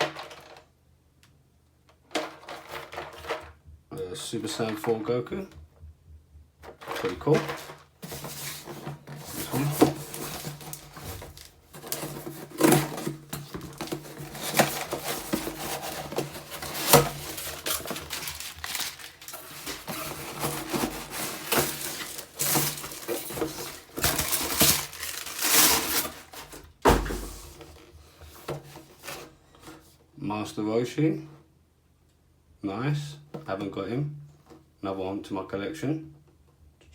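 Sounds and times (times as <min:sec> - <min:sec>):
packaging rustling and tearing: 0:06.7 - 0:29.3.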